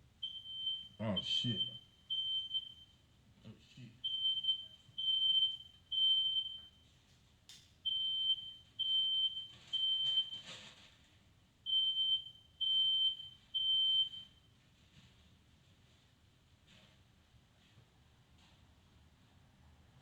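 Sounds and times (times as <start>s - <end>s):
smoke alarm beeping: 0.2s - 3.0s, 4.0s - 6.8s, 7.8s - 10.6s, 11.7s - 14.5s.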